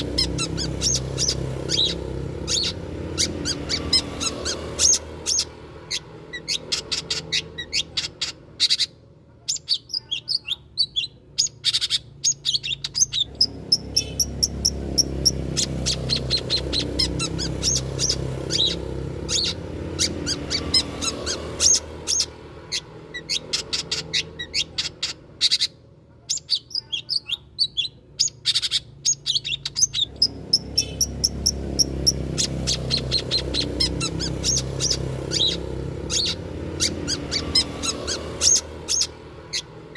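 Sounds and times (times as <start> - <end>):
bird chattering chirps: 0.0 - 39.9.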